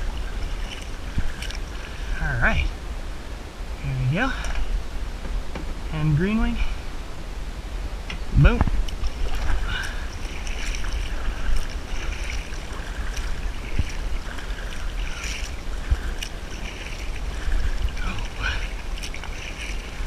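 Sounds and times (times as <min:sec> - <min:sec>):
paddle strokes in water: 0:00.0 - 0:02.2, 0:08.7 - 0:20.0
water splashes: 0:00.0 - 0:07.0, 0:08.1 - 0:20.0
wind rumble on microphone: 0:00.0 - 0:20.0.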